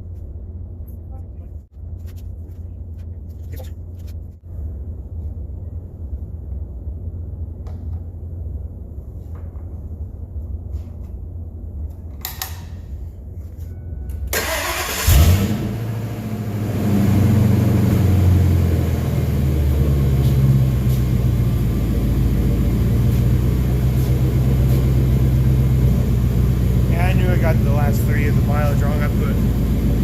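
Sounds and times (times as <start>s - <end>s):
truck engine starting and idling: 14.2s - 30.0s.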